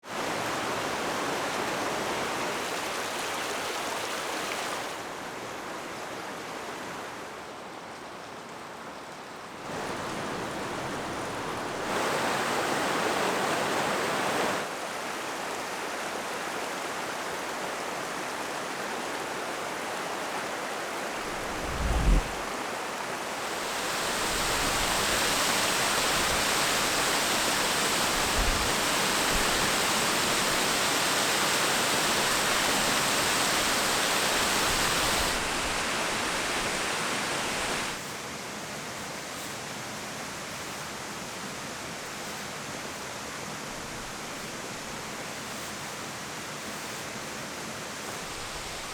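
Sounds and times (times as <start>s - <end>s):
flowing stream rushing: 0.1s - 38.4s, 39.8s - 48.9s.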